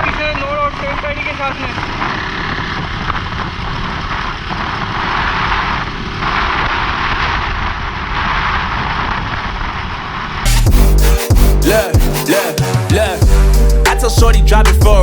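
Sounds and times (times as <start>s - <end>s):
wind rushing over microphone: 0.0s - 10.5s.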